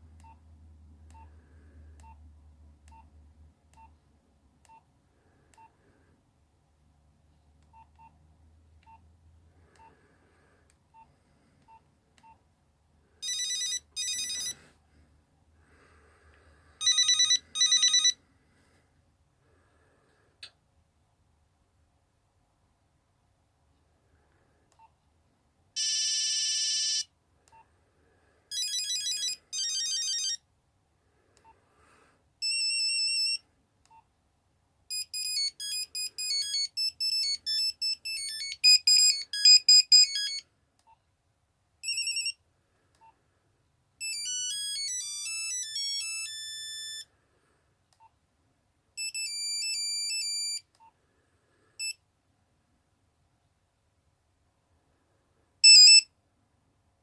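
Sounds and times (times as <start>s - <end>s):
monophonic ringtone beeping tune: 13.2s - 14.6s, 16.8s - 18.2s, 25.8s - 27.0s, 28.5s - 30.4s, 34.9s - 40.4s, 41.8s - 42.3s, 44.0s - 47.0s, 55.6s - 56.0s.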